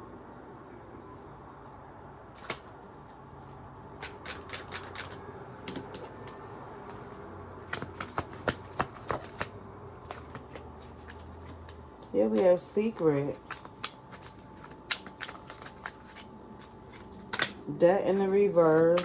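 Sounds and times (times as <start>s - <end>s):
card snap: 2.4s - 2.7s, 16.9s - 17.6s
deck of cards shuffling: 4.0s - 5.2s, 6.9s - 9.5s, 10.1s - 11.8s, 12.4s - 19.0s.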